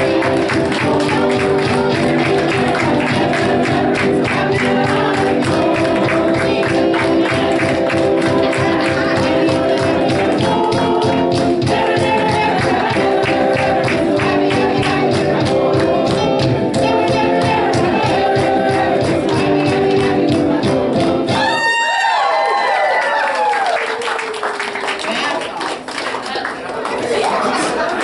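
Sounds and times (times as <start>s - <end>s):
steady beat: 0.0s - 21.6s
gospel worship music with singing: 0.0s - 22.3s.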